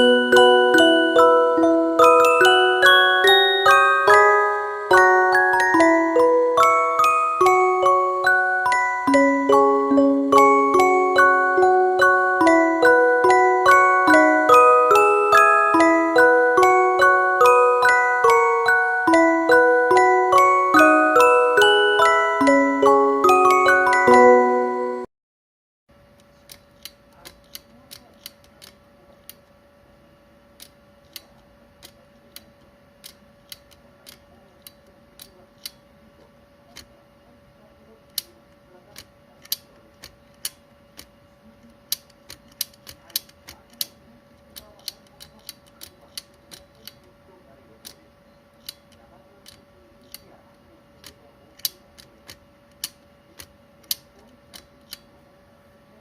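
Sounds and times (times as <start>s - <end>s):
faint steady hum: 0.0s - 25.1s.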